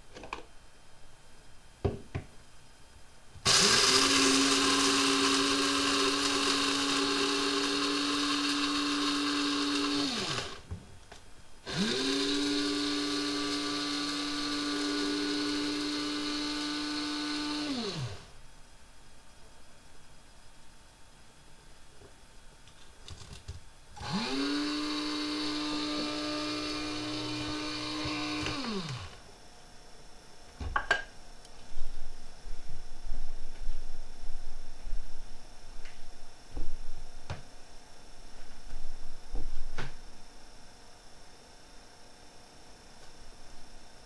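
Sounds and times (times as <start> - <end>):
coffee grinder motor: 3.4 - 10.6, 11.7 - 18.3, 24.0 - 29.2.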